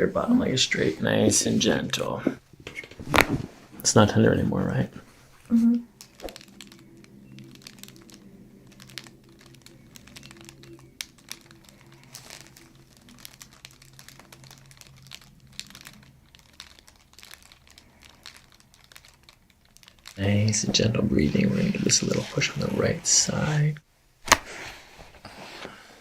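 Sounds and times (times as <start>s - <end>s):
low steady hum: 0.0s - 24.2s
crinkling and rustling: 0.4s - 23.6s.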